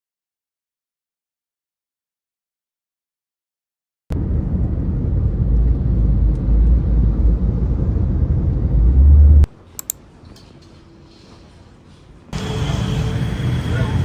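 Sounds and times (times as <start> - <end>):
loud low fluctuating rumble: 4.1 - 9.5.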